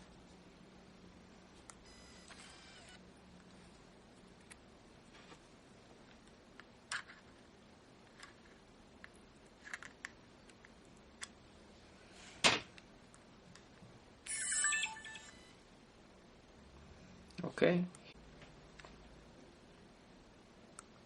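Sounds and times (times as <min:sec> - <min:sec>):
high whirring: 0:01.9 - 0:03.0.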